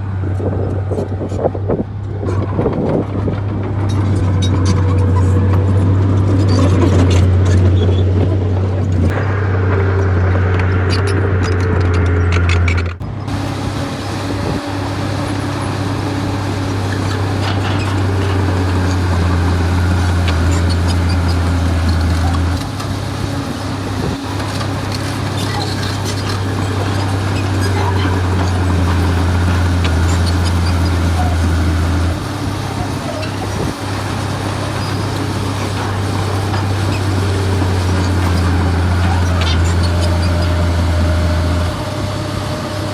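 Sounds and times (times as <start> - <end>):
heavy diesel engine running under load: 0.0 - 42.9.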